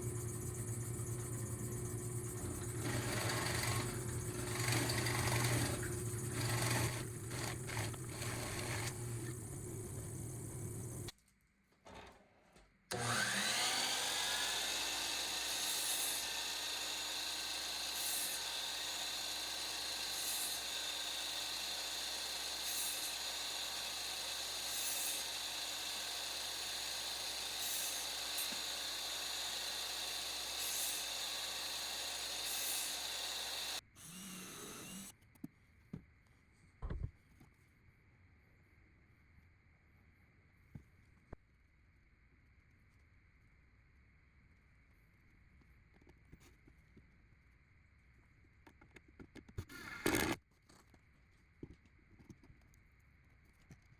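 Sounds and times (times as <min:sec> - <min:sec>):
power drill boring into wood: 0:02.6 - 0:11.1, 0:12.9 - 0:35.1.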